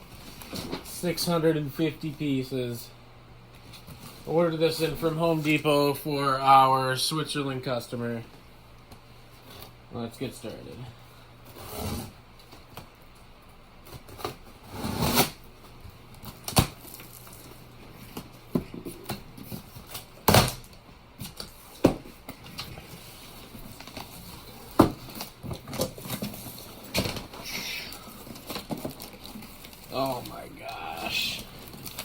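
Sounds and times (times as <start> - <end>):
packaging rustling: 22.6 - 32.0.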